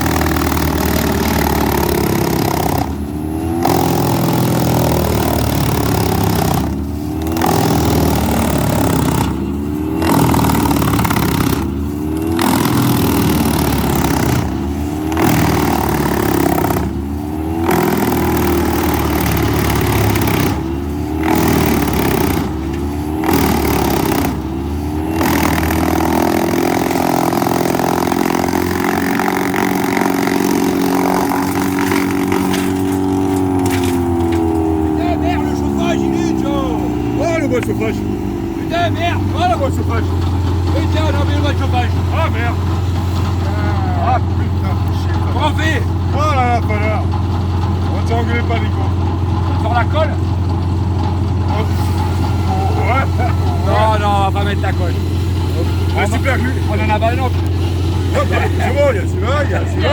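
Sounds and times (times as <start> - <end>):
branches being chipped: 0.0 - 45.7
wood chipper engine running: 0.0 - 59.9.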